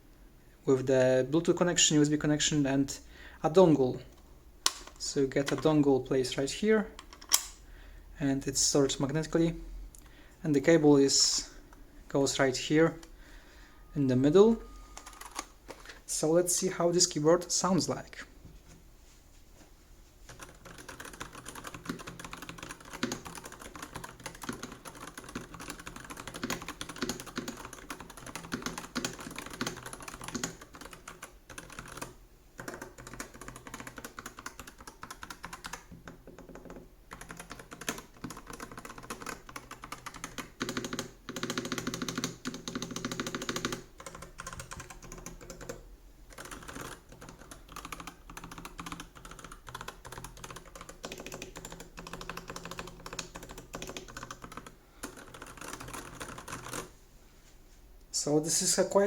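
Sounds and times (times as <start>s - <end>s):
mechanical keyboard keystroke clacks: 20.3s - 56.9s.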